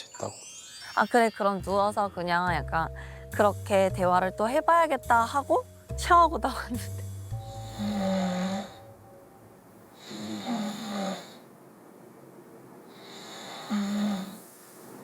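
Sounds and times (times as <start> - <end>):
man snoring: 7.4 - 8.9, 10.0 - 11.5, 12.9 - 14.5.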